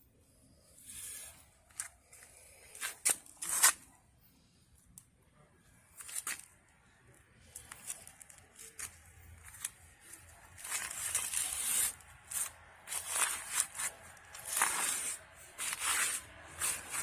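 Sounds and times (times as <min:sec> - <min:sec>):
rustling and scraping: 0:00.8 - 0:03.9, 0:07.4 - 0:17.0.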